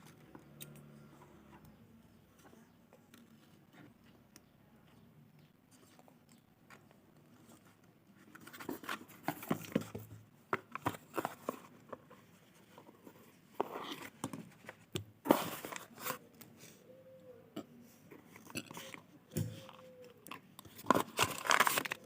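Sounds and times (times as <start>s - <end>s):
plastic packaging crinkling: 20.6s - 22.0s.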